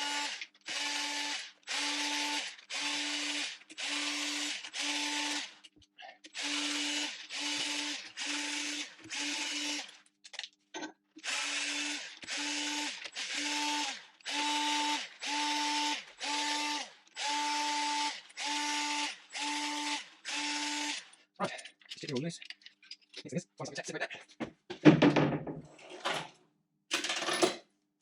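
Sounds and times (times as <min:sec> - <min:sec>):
power tool whirring: 0:00.0 - 0:05.7, 0:06.3 - 0:10.0, 0:11.2 - 0:21.2.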